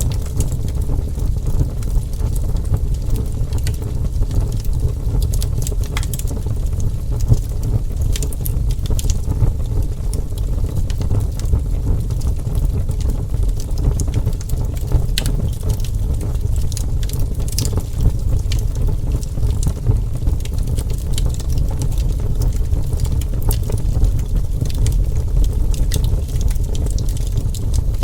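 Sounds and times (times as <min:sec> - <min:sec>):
low fire rumble: 0:00.0 - 0:28.0
wood fire crackling and popping: 0:00.0 - 0:28.0.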